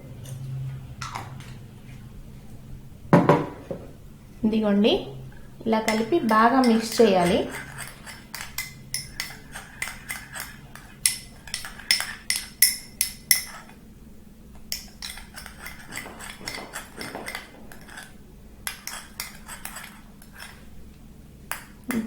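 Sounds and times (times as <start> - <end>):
spoon clinking against bowl: 5.8 - 13.8, 14.7 - 20.6.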